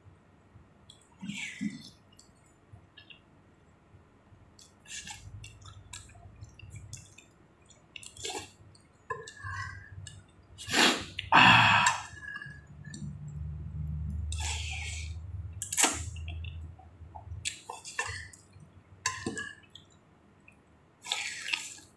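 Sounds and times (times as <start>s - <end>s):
slurping: 8.0s - 8.6s, 9.2s - 13.1s, 14.1s - 16.2s, 21.0s - 21.9s.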